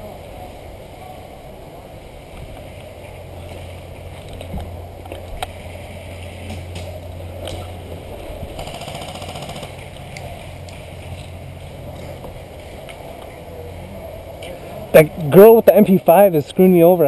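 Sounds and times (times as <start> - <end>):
steady low hum: 0.0 - 17.0
automatic airsoft fire rattle: 8.6 - 10.2.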